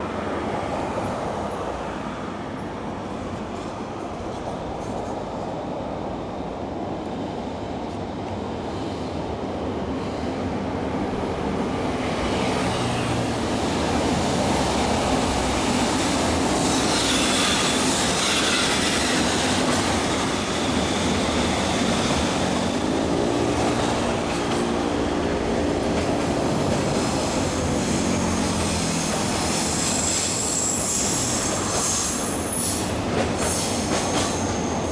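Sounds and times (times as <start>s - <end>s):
freight train rolling past: 0.0s - 34.9s
train wheel squeal: 12.6s - 24.5s, 26.8s - 34.9s.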